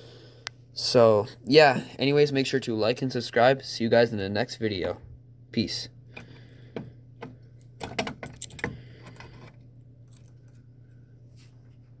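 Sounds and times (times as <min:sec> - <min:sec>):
faint steady low hum: 0:00.0 - 0:12.0.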